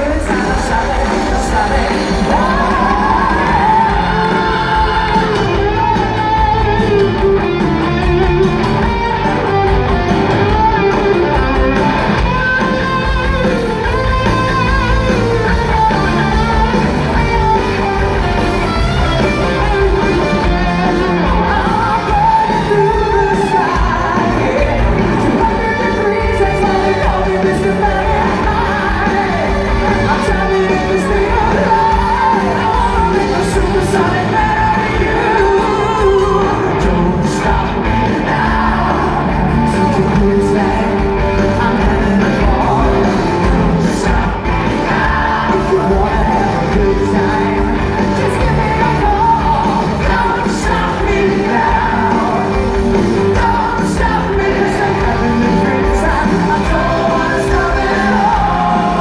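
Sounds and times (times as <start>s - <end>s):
live rock band playing: 0.0s - 59.0s
people singing and yelling: 0.0s - 59.0s.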